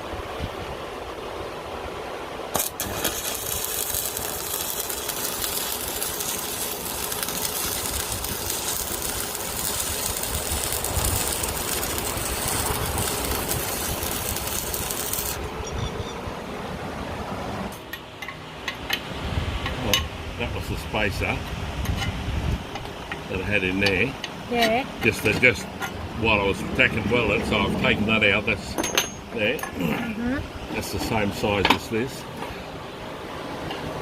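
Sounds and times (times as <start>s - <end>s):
hissing crackling metalworking: 2.5s - 16.2s.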